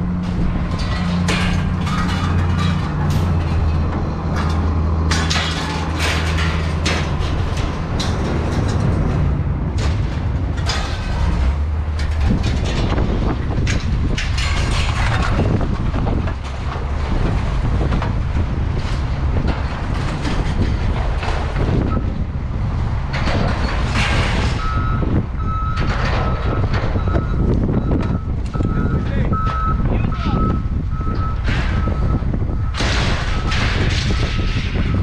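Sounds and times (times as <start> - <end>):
knocks and bangs: 0.0 - 28.2, 31.3 - 35.0
heavy vehicle engine rumbling: 0.0 - 35.0
reversing alarm beeping: 24.6 - 34.3.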